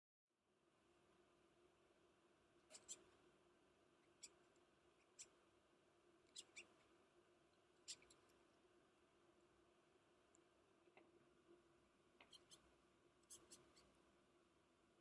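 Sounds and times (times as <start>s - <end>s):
beetle squeaking: 2.7s - 3.0s, 6.3s - 6.7s.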